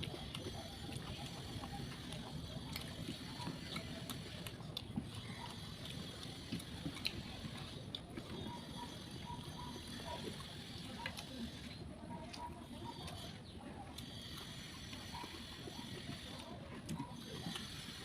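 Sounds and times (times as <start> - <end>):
wet chewing: 0.0 - 18.0.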